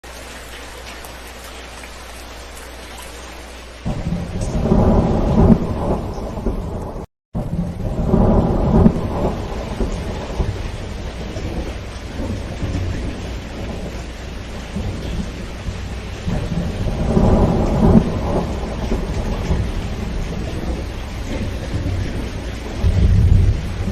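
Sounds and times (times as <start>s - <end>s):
rain on a metal roof: 0.0s - 23.9s
thunder rumbling: 3.8s - 23.9s.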